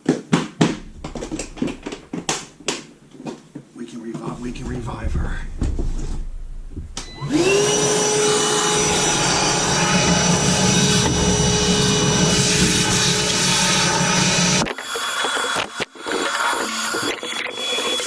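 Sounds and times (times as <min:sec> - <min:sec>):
shop vacuum whine: 0:07.0 - 0:14.6.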